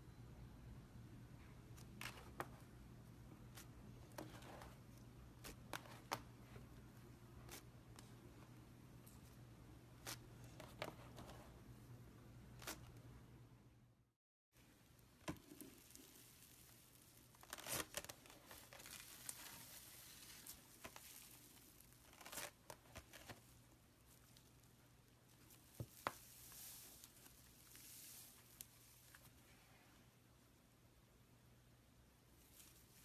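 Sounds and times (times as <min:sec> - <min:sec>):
slime stretching and tearing: 0:15.5 - 0:23.1.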